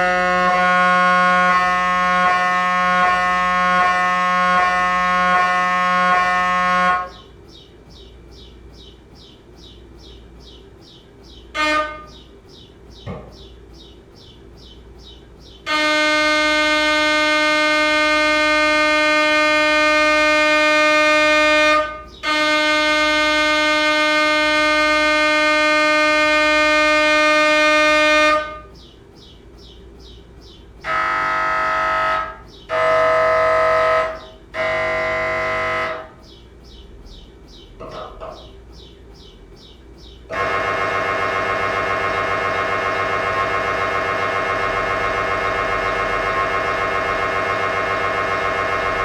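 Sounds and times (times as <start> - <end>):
mri scanner loud buzzing: 30.8 - 36.2, 40.3 - 49.0
short deep buzzes: 30.8 - 36.4, 40.3 - 49.0.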